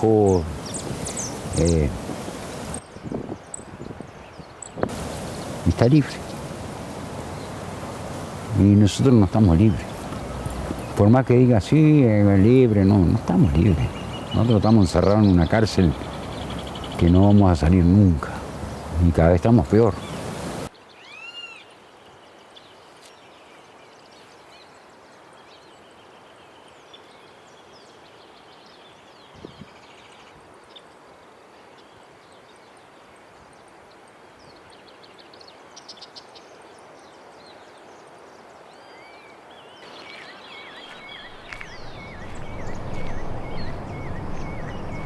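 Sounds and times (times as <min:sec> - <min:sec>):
wild birds calling and singing: 0:00.0 - 0:21.8, 0:37.4 - 0:45.0
steady outdoor hiss: 0:00.0 - 0:45.0
deep rushing noise: 0:41.2 - 0:45.0.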